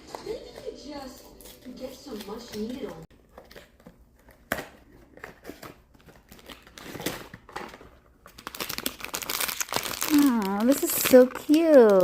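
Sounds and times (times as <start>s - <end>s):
packaging crinkling and rustling: 3.1s - 12.0s.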